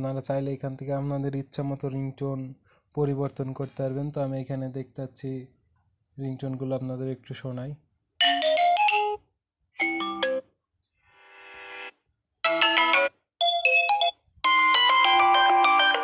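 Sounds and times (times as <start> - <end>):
phone ringtone snippets: 9.8 - 10.4, 12.5 - 16.0.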